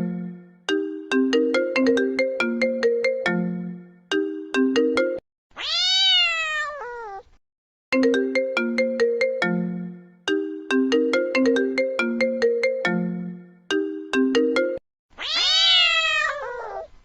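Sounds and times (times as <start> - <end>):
phone ringtone melody: 0.0 - 5.2, 7.9 - 14.8
cat meowing: 5.6 - 7.4, 15.2 - 17.0.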